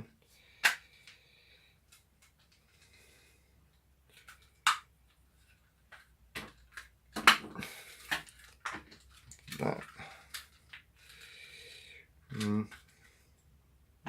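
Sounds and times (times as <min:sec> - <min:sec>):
plastic parts clicking together: 0:05.9 - 0:11.3.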